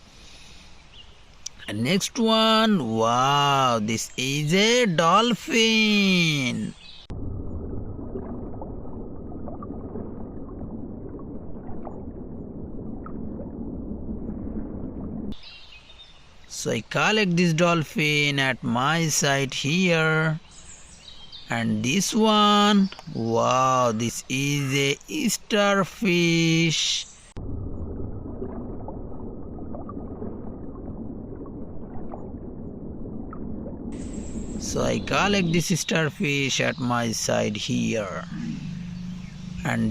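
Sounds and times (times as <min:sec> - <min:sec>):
muffled water sloshing and gurgling: 0:02.8 - 0:18.9, 0:27.1 - 0:39.9
muffled underwater rumble: 0:06.0 - 0:15.4, 0:27.4 - 0:39.9.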